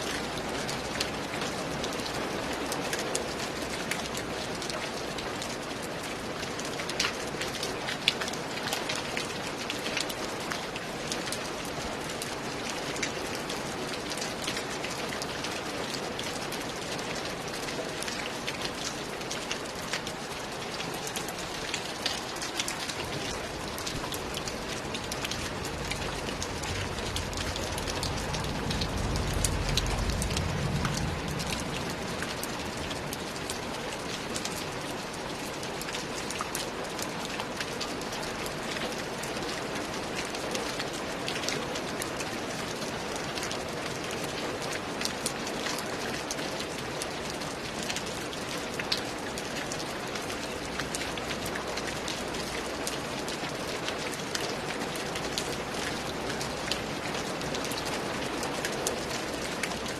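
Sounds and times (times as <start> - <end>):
heavy rain: 0.0 - 59.9
low rumble: 25.5 - 32.8.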